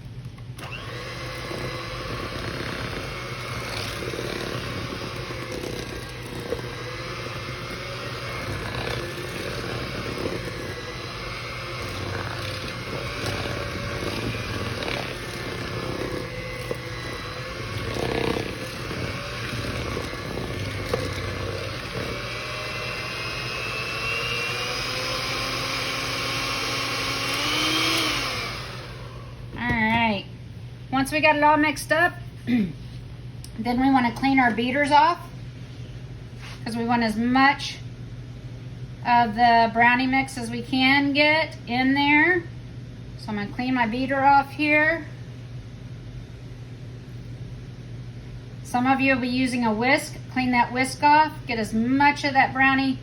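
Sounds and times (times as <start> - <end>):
electric hand mixer running: 0.5 - 29.7.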